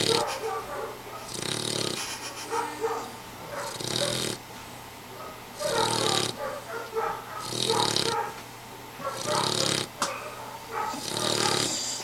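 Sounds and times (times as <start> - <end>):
pet snoring: 0.0 - 0.4, 1.3 - 2.2, 3.6 - 4.4, 5.6 - 6.4, 7.4 - 8.4, 9.1 - 10.0, 10.9 - 12.0.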